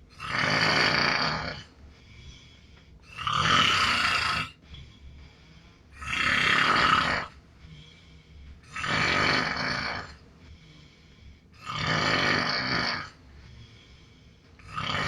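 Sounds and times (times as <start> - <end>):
quiet breaths: 0.0 - 15.0
man snoring loudly: 0.1 - 1.6, 3.1 - 4.6, 6.0 - 7.3, 8.7 - 10.2, 11.6 - 13.2, 14.6 - 15.0.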